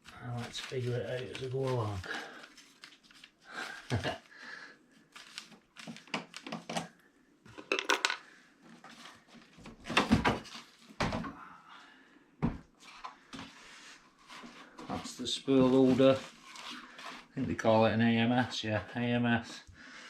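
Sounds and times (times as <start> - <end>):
hard parts knocking and clattering: 7.5 - 8.2.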